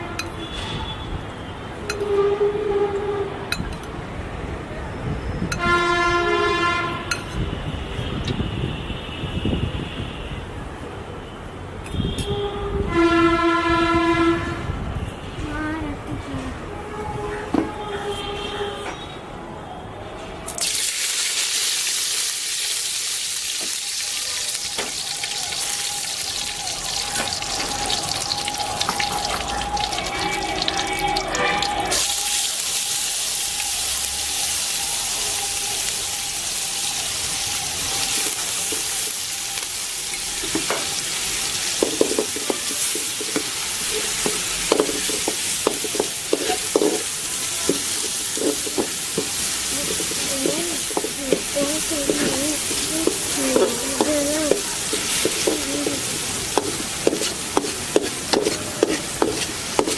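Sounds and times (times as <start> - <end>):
paste sizzling in hot oil: 20.6 - 59.9
spoon scraping a pan: 41.8 - 59.9.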